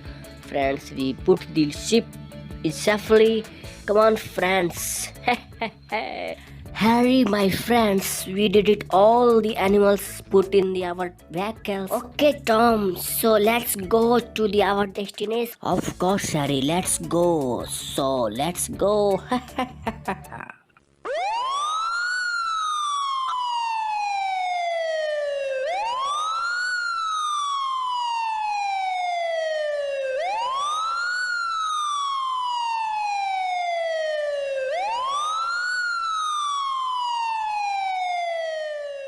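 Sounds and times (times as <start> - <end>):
siren wailing: 21.0 - 39.0.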